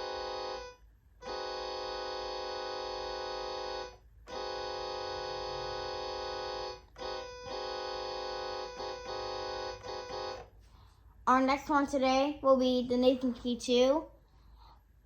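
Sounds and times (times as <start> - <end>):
electronic keyboard chord blasts: 0.0 - 10.6.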